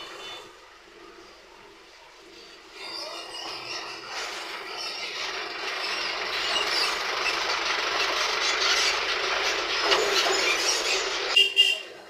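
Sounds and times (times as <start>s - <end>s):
faint squeal: 2.4s - 5.2s
coil-winding machine whirring: 3.1s - 11.4s.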